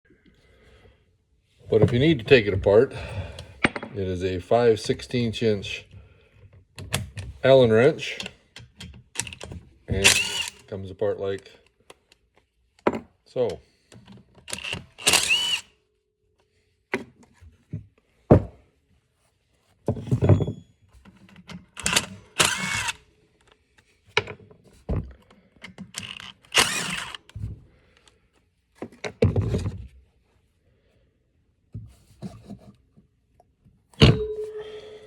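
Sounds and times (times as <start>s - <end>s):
pump parts clunking and scraping: 1.6s - 4.1s, 6.8s - 10.6s, 19.8s - 22.9s, 24.1s - 27.9s, 28.8s - 30.0s, 34.0s - 35.0s.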